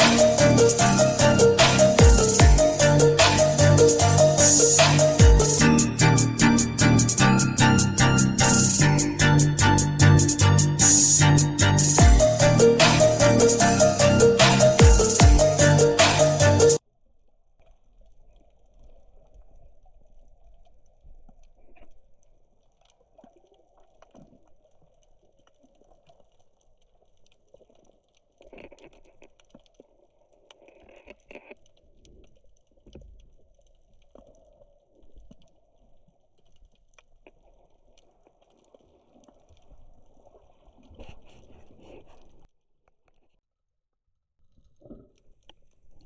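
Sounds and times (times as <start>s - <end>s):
background music: 0.0s - 16.8s
small clicks and crackles: 17.1s - 43.4s, 44.4s - 46.0s.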